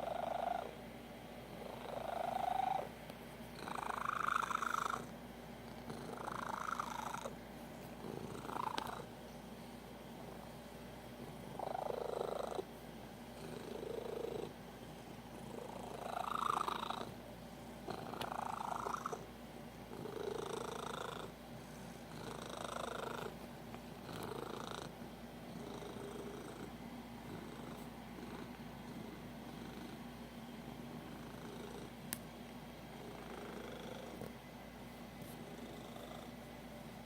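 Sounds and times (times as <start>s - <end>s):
cat purring: 0.0s - 0.8s, 1.5s - 3.0s, 3.6s - 9.2s, 11.3s - 12.7s, 13.3s - 14.6s, 15.3s - 17.2s, 17.8s - 19.3s, 19.9s - 30.2s, 30.8s - 32.1s, 32.9s - 34.4s, 35.2s - 36.5s.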